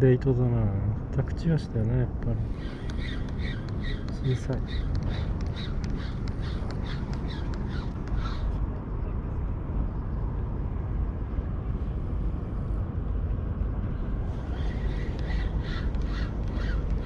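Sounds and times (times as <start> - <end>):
wind on microphone: 2.2 - 17.0
bird calling: 2.4 - 8.6, 14.3 - 17.0.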